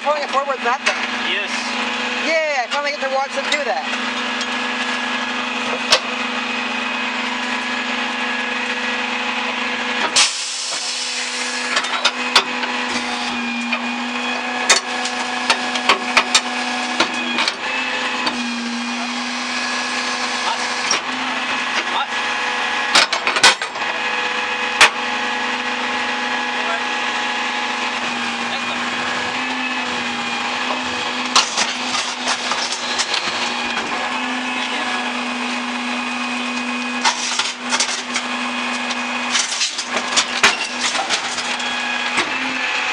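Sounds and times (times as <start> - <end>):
garbage truck engine: 0.0 - 42.9
hydraulic whine: 0.0 - 42.9
metal clanks and knocks: 22.9 - 23.8, 39.3 - 42.4.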